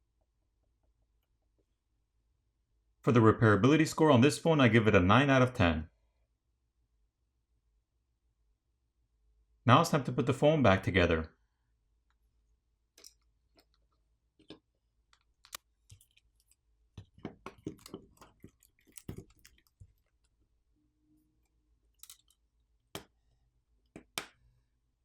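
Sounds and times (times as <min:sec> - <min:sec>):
small phone parts clicking: 0:13.0 - 0:20.4, 0:21.9 - 0:23.2.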